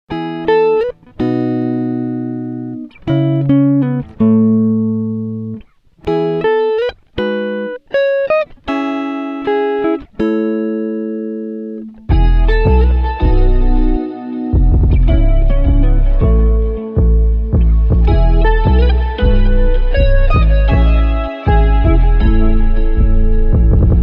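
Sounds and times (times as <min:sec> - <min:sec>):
slow guitar notes and chords: 0:00.1 - 0:24.0
band with heavy bass: 0:14.6 - 0:24.0.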